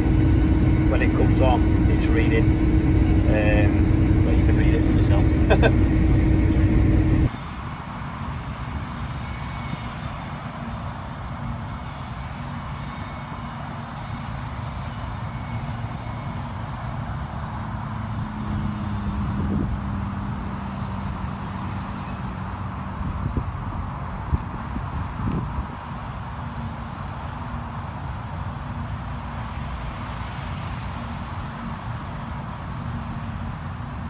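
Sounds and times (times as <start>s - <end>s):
combine harvester droning: 0.0s - 7.3s.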